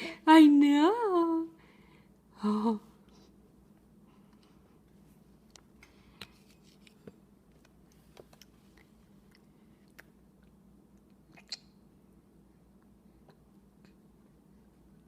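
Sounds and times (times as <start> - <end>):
room hum: 0.0 - 15.0
baby eating mouth smacks: 5.4 - 11.8.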